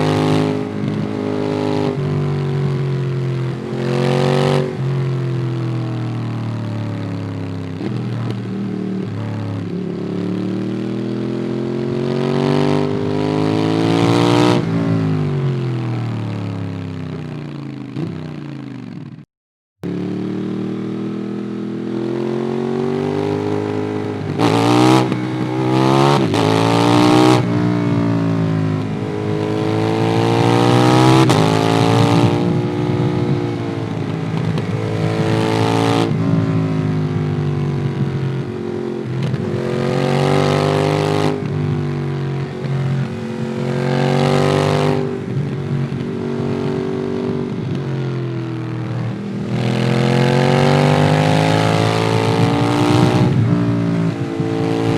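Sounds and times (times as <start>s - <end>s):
motorcycle engine accelerating: 0.0s - 19.2s, 19.8s - 54.9s.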